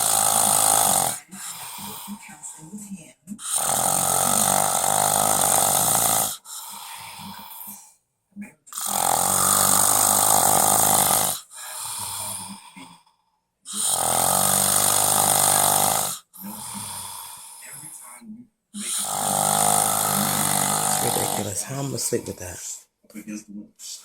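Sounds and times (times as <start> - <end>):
man snoring loudly: 0.0 - 2.2, 3.4 - 7.8, 8.7 - 13.1, 13.7 - 17.6, 18.8 - 22.8
quiet breath: 0.0 - 3.1, 6.2 - 8.0, 11.3 - 13.8, 16.0 - 19.0.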